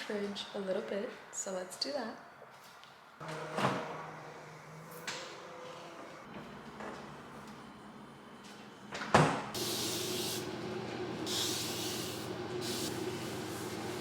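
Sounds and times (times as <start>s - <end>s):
refrigerator hum: 6.3s - 14.0s.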